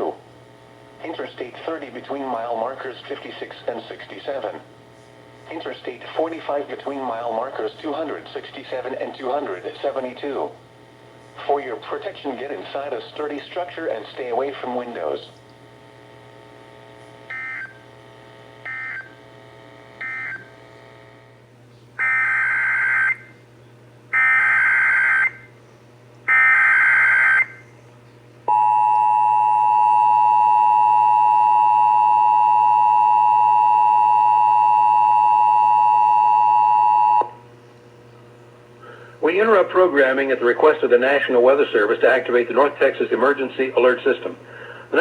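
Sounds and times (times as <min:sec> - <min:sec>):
longer data bursts: 0:15.8 - 0:21.4, 0:22.0 - 0:23.3, 0:24.1 - 0:25.5, 0:26.3 - 0:27.6
two-tone attention signal: 0:17.3 - 0:17.8, 0:18.7 - 0:19.2, 0:20.0 - 0:20.5, 0:28.5 - 0:37.3.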